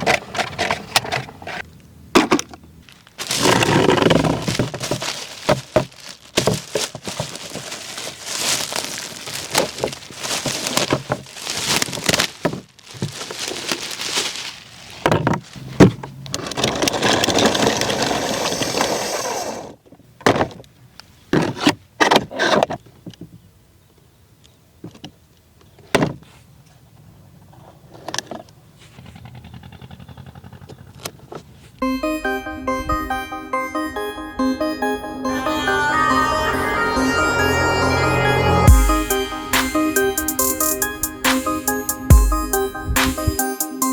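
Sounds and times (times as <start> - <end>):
scraping and rustling packaging: 0.0 - 19.7
keyboard music: 31.8 - 43.9.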